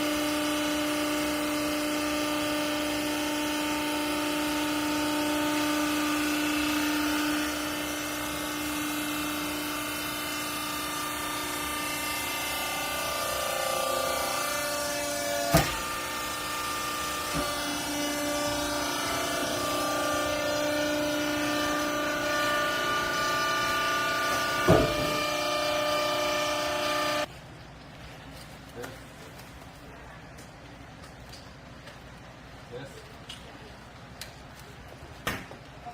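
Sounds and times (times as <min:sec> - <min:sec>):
baler machine humming: 0:00.0 - 0:27.3.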